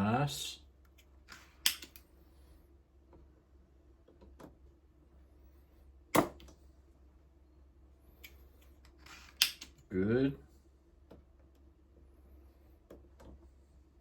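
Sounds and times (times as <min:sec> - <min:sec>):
faint steady hum: 0:00.0 - 0:14.0.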